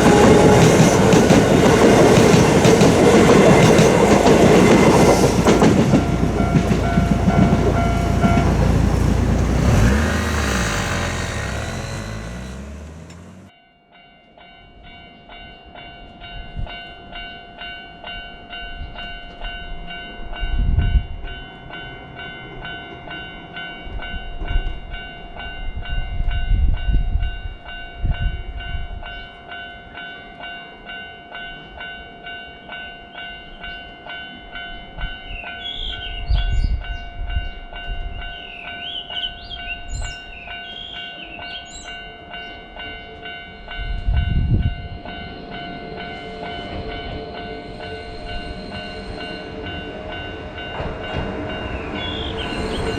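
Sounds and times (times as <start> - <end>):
train passing rumble: 0.0 - 13.5, 35.8 - 52.9
level crossing bell ringing: 40.6 - 51.8.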